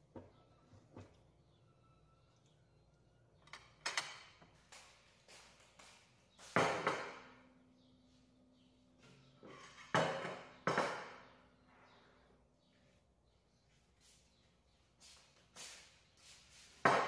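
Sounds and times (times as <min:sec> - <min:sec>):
utensils and dishes clattering: 0:09.2 - 0:11.4.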